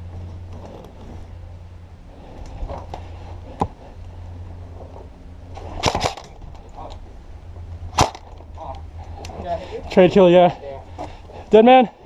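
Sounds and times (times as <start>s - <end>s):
airsoft gun shots: 7.9s - 8.2s.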